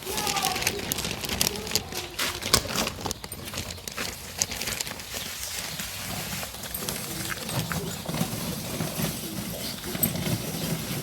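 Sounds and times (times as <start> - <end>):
chicks pecking and scratching: 0.0 - 11.0.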